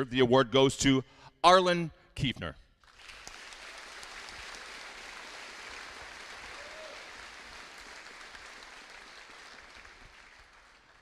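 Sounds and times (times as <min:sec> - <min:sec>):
audience applauding: 0:02.8 - 0:11.0.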